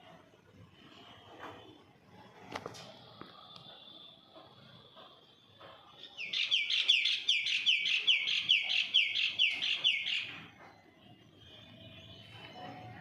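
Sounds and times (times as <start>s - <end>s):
bird singing sharp notes: 6.2s - 10.4s.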